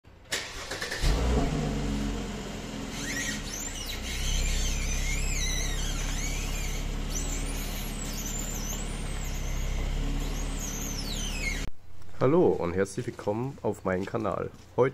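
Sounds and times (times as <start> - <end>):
car engine humming: 0.3 - 11.8
suspension squeaking: 2.8 - 11.7.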